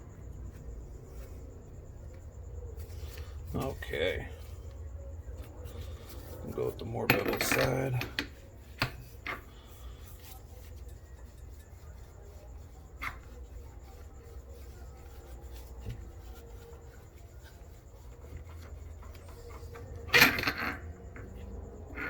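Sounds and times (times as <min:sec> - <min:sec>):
metallic clatter: 0:06.8 - 0:08.4.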